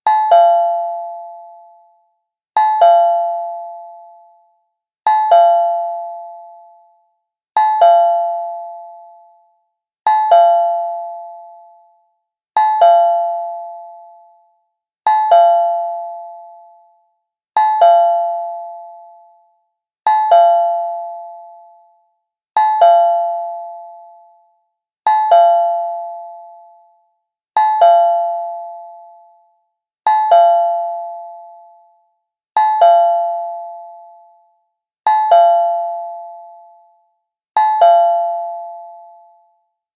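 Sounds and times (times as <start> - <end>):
two-tone doorbell chime: 0.1 - 2.0, 2.6 - 4.5, 5.1 - 7.0, 7.6 - 9.5, 10.1 - 12.0, 12.6 - 14.4, 15.1 - 17.0, 17.6 - 19.4, 20.1 - 22.0, 22.6 - 24.5, 25.1 - 27.0, 27.6 - 29.5, 30.1 - 32.0, 32.6 - 34.5, 35.1 - 39.6.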